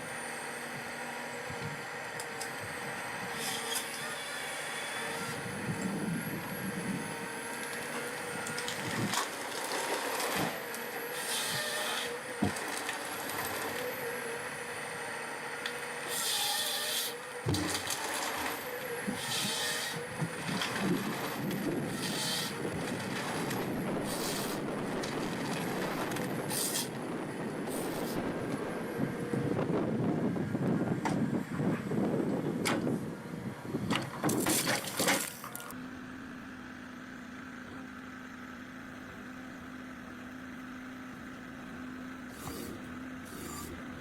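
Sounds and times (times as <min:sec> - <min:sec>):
forestry machine engine: 0:00.0 - 0:44.0
hydraulic hissing: 0:42.3 - 0:43.8.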